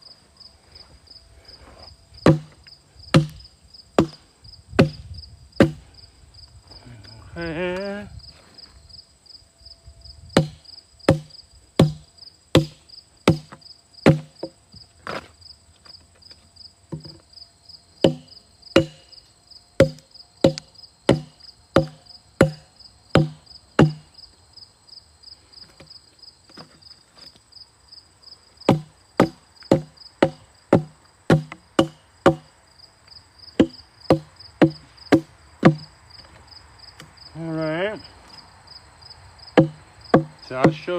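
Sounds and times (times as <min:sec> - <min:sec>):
crickets chirping: 0:00.0 - 0:40.9
hatchet chopping wood: 0:02.2 - 0:03.4, 0:04.0 - 0:04.2, 0:04.8 - 0:05.8, 0:10.4 - 0:14.6, 0:18.0 - 0:19.1, 0:19.8 - 0:24.1, 0:28.7 - 0:32.5, 0:33.6 - 0:35.9, 0:39.6 - 0:40.9.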